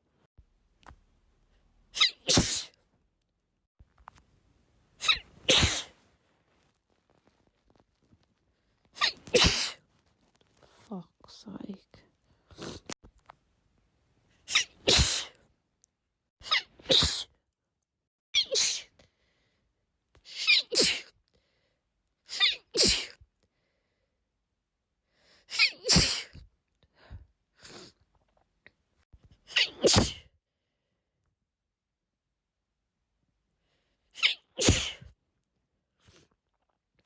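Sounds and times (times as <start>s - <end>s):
woman sneezing: 2.0s - 2.8s, 5.0s - 6.0s, 9.0s - 9.8s, 14.5s - 15.4s, 16.5s - 17.3s, 20.3s - 21.1s, 22.4s - 23.2s, 25.5s - 26.4s, 29.5s - 30.3s, 34.2s - 35.1s.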